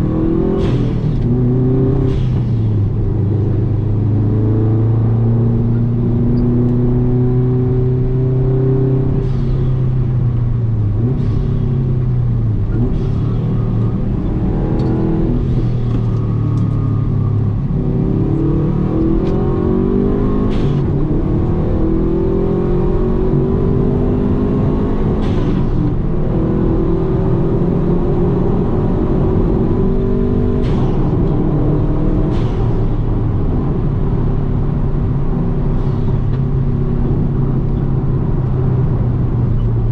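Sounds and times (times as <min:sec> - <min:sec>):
car engine revving hard: 0:12.6 - 0:33.8.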